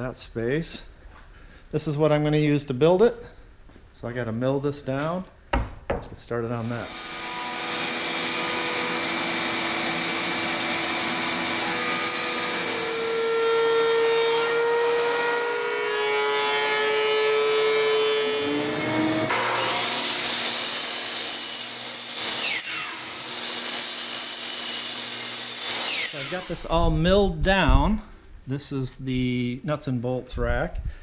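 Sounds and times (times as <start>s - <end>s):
woodworking machine whining: 6.6s - 26.8s.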